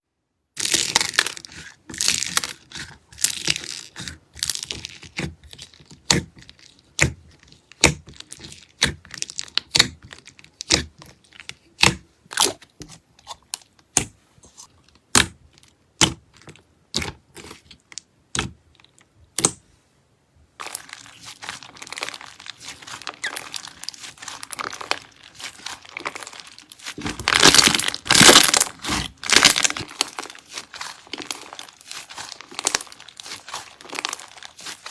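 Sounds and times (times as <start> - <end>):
slime crackling and crinkling: 0.6 - 19.6, 20.6 - 34.9
slime squishing with clicking pops: 0.8 - 14.2, 14.8 - 19.6.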